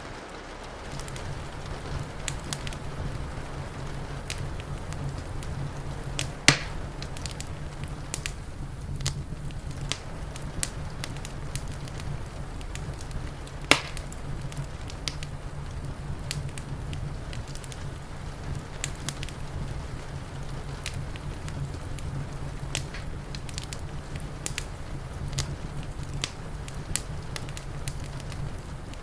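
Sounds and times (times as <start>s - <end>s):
loud sharp snaps of fire: 0.0s - 29.0s
low rumble: 0.0s - 29.0s
wood fire crackling: 0.0s - 29.0s.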